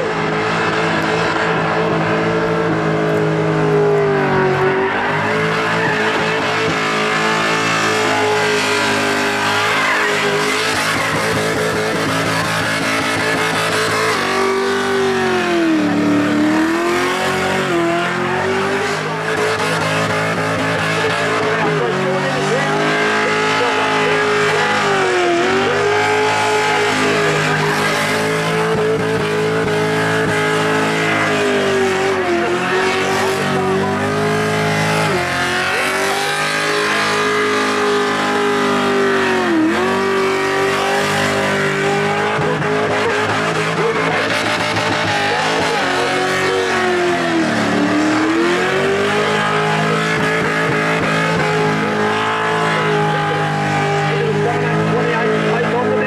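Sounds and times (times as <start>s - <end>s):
car engine at high revs: 0.0s - 56.0s
tyres screeching: 0.0s - 56.0s.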